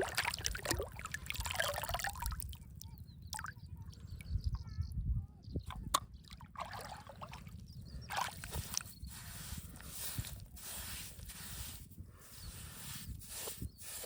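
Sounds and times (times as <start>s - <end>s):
water sloshing and splashing: 0.0s - 2.7s, 5.7s - 8.9s.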